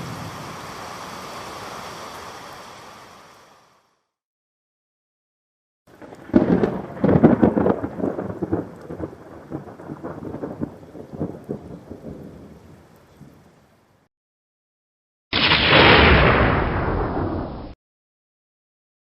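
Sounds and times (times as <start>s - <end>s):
thunder clap rumbling: 0.0s - 1.2s, 5.9s - 12.7s, 15.4s - 17.8s.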